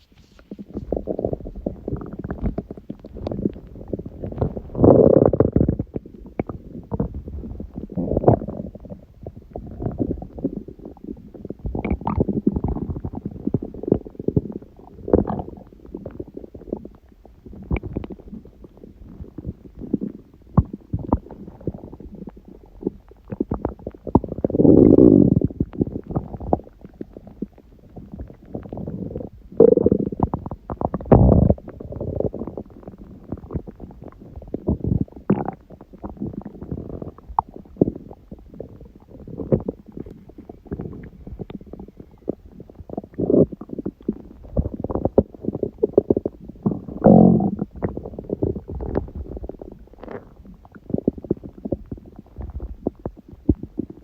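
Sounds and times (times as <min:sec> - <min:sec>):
stomach growling and gurgling: 0:00.0 - 0:54.0.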